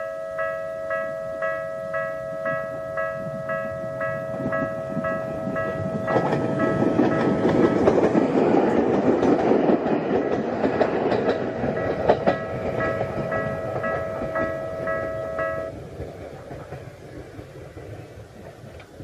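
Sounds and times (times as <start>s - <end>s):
level-crossing warning bell: 0.0s - 10.0s, 10.6s - 15.8s
electric train passing: 0.0s - 19.0s
wheels clacking over rail joints: 3.1s - 19.0s.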